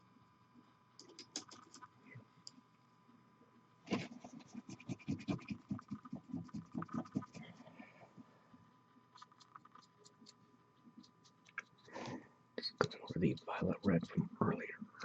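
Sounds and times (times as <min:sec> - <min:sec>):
stiff brush scrubbing: 0:04.0 - 0:07.8, 0:12.8 - 0:14.3.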